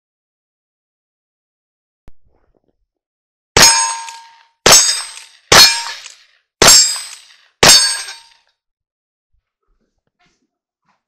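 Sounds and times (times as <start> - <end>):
struck metal clangs: 3.6 - 8.4.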